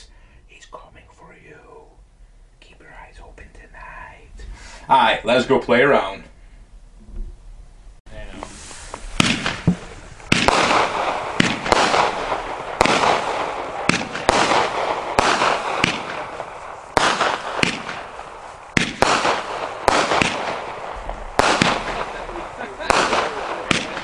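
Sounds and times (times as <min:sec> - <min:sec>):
firework shots banging and hissing: 0:08.2 - 0:24.0.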